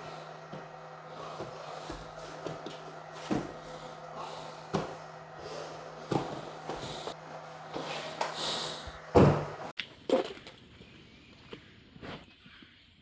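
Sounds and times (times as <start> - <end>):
steady low hum: 0.0 - 9.7.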